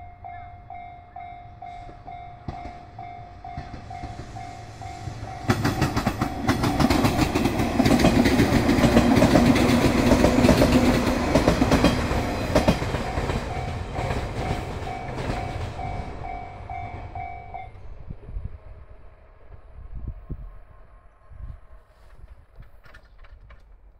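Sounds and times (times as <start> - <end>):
crossing warning bell ringing: 0.0 - 17.9
train wheels clattering over rails: 1.6 - 17.5.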